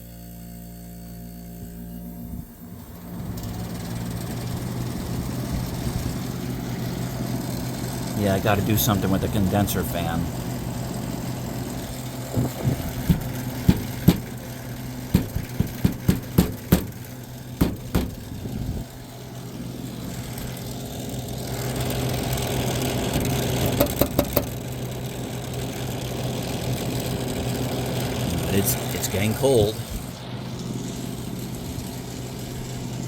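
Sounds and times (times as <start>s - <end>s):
compressor hum: 0.0s - 33.0s
fan whirring: 1.4s - 33.0s
sharp clicks and knocks: 12.3s - 14.5s, 15.1s - 18.3s, 23.1s - 24.6s.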